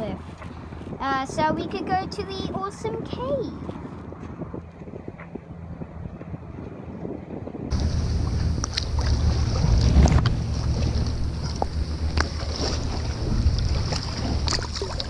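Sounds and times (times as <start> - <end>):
water sloshing around boat: 0.0 - 15.0
wind rumbling on microphone: 0.0 - 15.0
light splashes and knocks: 7.7 - 15.0.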